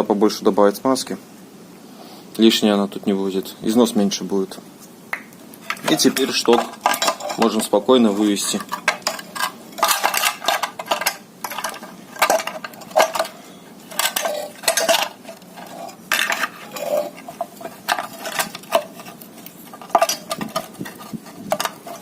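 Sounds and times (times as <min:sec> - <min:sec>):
metallic clinks and rattles: 0:05.6 - 0:07.7, 0:08.4 - 0:19.1, 0:19.7 - 0:22.0.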